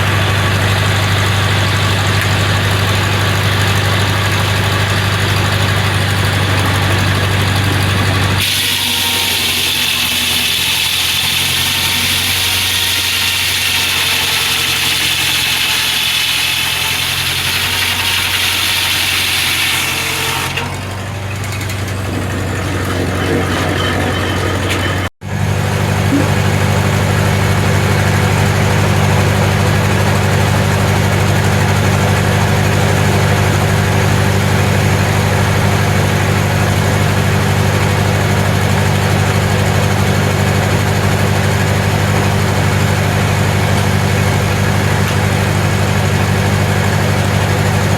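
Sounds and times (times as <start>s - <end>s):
sawmill engine running: 0.0s - 47.9s
saw blade hissing and whining: 8.2s - 20.6s.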